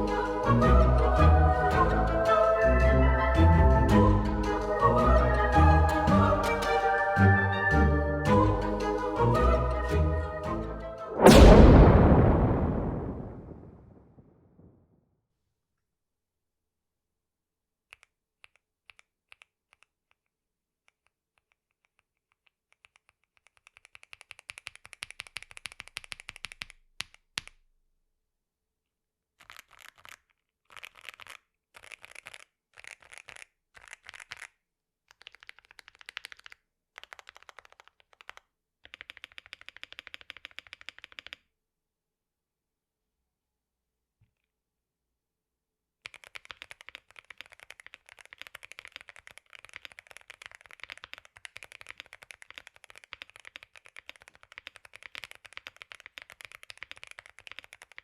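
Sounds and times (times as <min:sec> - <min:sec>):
mechanical keyboard typing: 0:35.1 - 0:41.4, 0:46.0 - 0:58.0.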